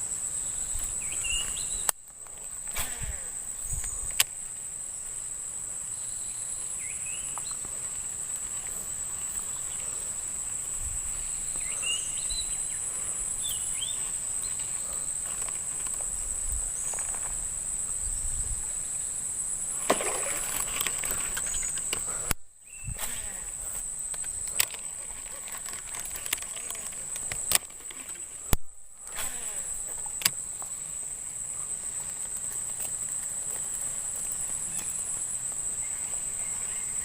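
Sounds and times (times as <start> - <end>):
high-pitched insect drone: 0.0 - 37.0
sharp click: 25.7 - 30.4.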